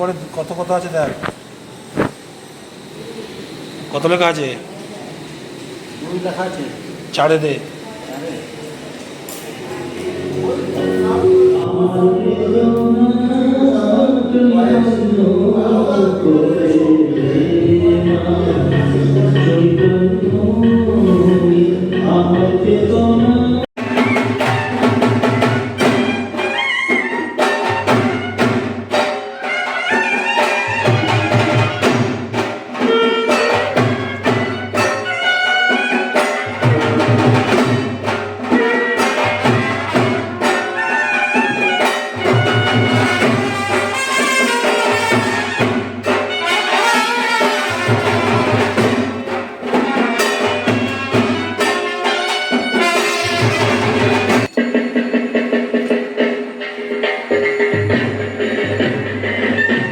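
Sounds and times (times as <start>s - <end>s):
drums: 9.1s - 59.9s
brass melody: 9.8s - 54.5s.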